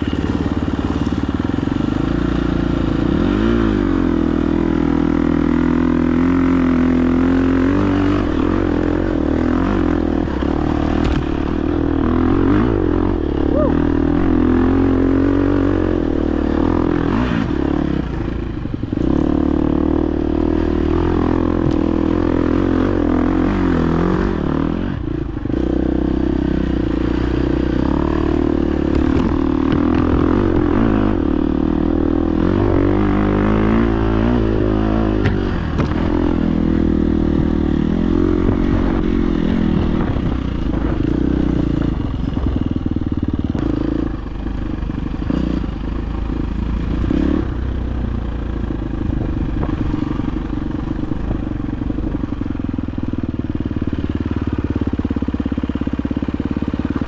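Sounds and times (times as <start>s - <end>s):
dirt bike engine revving: 0.0s - 57.0s.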